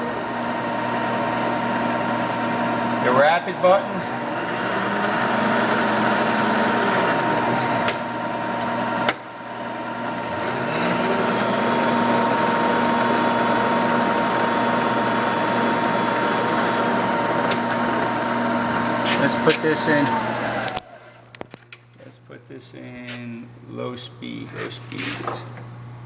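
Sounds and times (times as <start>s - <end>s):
steady machine hum: 0.0s - 21.5s
table feed motor whine: 0.0s - 21.5s
motor switch click: 5.2s - 8.2s, 19.0s - 21.7s.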